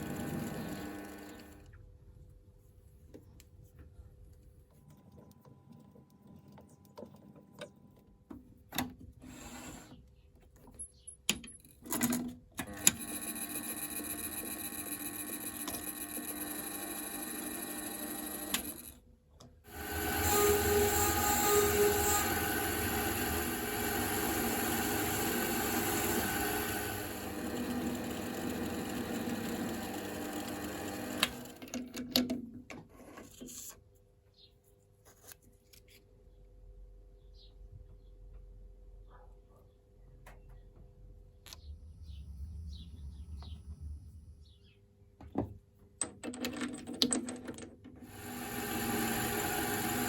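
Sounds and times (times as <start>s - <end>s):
lathe motor running: 0.0s - 1.6s, 19.7s - 31.6s, 48.1s - 50.0s.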